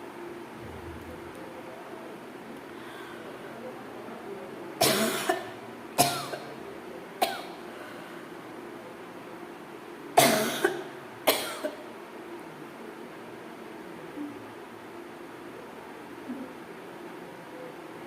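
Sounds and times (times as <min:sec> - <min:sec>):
person coughing: 0:04.8 - 0:06.4, 0:10.2 - 0:11.8.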